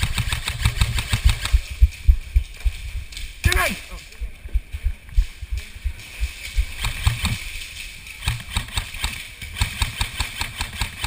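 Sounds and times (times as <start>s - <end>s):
low thumps: 1.0s - 3.5s.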